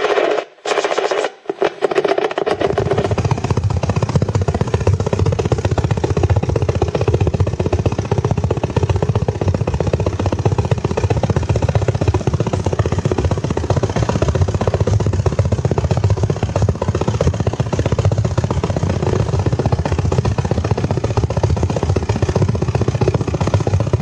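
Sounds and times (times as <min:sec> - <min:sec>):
radio pulsing buzz: 0:00.0 - 0:01.8.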